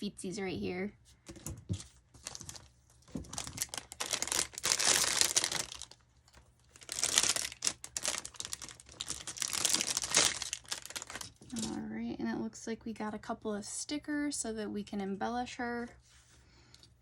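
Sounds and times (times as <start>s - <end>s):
plastic packaging crinkling: 1.3s - 11.8s.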